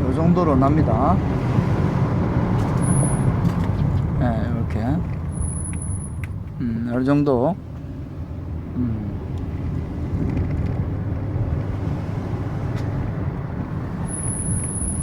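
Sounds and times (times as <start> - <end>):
car road and engine rumble: 0.0 - 15.0
high-pitched brake squeal: 2.8 - 3.3, 14.0 - 15.0.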